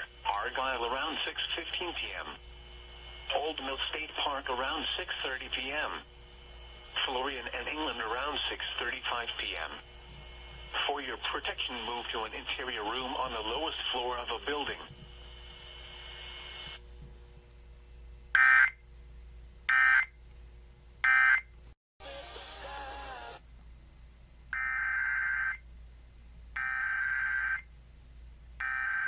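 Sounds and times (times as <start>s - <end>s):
radio static: 0.0s - 16.8s.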